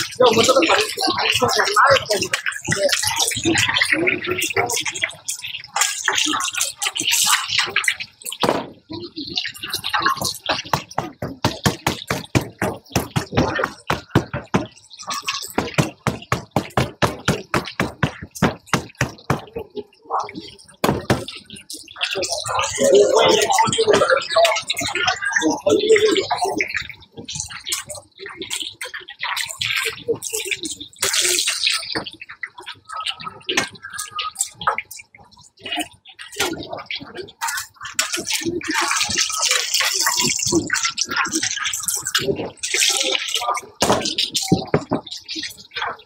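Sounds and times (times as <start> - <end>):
rapid knocking on work surface: 10.3 - 14.8, 15.5 - 19.6, 20.8 - 21.3.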